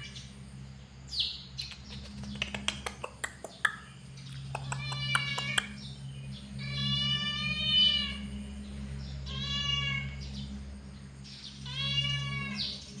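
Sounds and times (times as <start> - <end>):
cat yowling: 4.6 - 5.7.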